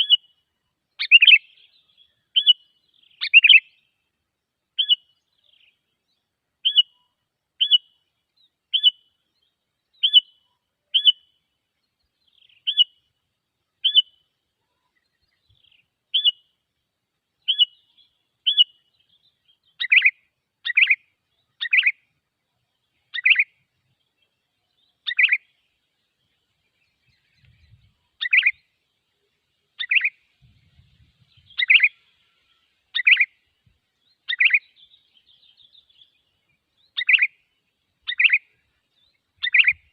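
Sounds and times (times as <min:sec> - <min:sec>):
bulbul calls: 0:00.0 - 0:00.4, 0:01.0 - 0:03.9, 0:04.8 - 0:05.8, 0:06.6 - 0:08.0, 0:08.7 - 0:09.1, 0:09.9 - 0:11.4, 0:12.2 - 0:13.1, 0:13.8 - 0:16.5, 0:17.4 - 0:22.1, 0:23.0 - 0:23.7, 0:24.8 - 0:25.6, 0:26.7 - 0:28.7, 0:29.8 - 0:33.4, 0:34.0 - 0:36.2, 0:36.8 - 0:39.9.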